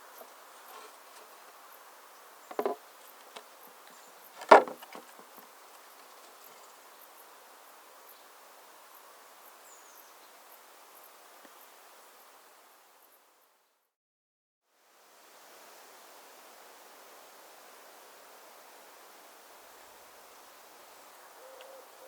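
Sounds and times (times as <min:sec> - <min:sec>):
sharp knocks: 0:02.5 - 0:02.8, 0:04.4 - 0:05.0.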